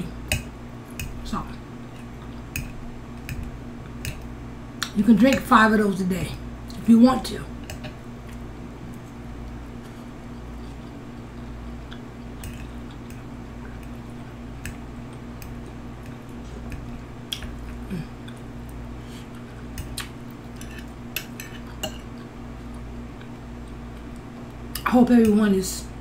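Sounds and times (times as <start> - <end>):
steady low hum: 0.0 - 26.0
chewing: 7.6 - 24.8.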